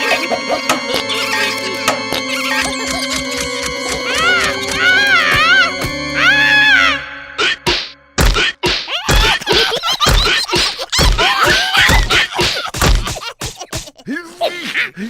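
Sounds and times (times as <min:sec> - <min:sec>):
squeaky wordless cries: 0:00.0 - 0:07.6
cartoon whacks and thuds: 0:07.6 - 0:14.0.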